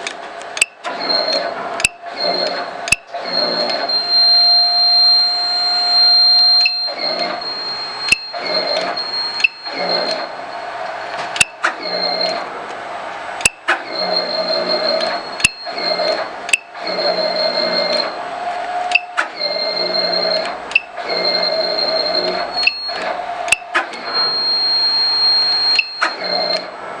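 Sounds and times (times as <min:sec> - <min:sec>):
robot buzzing with whine: 0:00.9 - 0:10.9, 0:11.6 - 0:12.5, 0:13.7 - 0:26.7
sharp click: 0:01.8 - 0:02.0, 0:11.1 - 0:12.4, 0:13.4 - 0:13.8, 0:16.5 - 0:16.7, 0:22.6 - 0:24.0.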